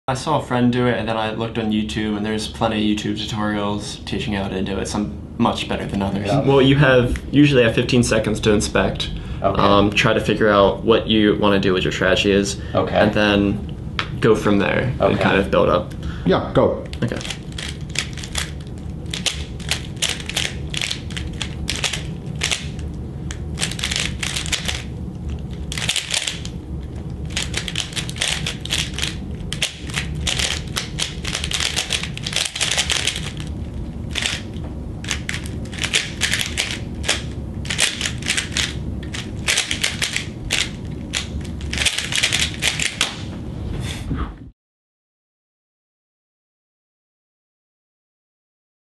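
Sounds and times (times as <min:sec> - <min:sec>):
puzzle cube clicking: 0:16.9 - 0:26.6, 0:27.3 - 0:33.5, 0:34.1 - 0:34.5, 0:35.1 - 0:43.2.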